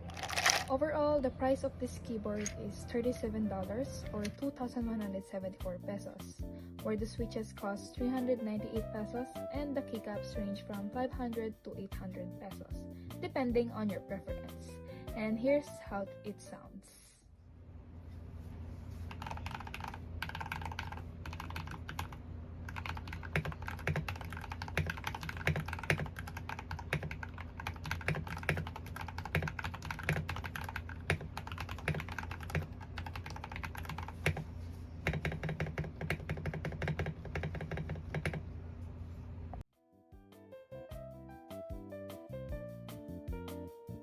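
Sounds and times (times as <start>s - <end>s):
mechanical keyboard typing: 0.0s - 0.7s, 19.1s - 34.4s, 35.0s - 38.4s
music: 1.1s - 16.9s, 39.7s - 44.0s.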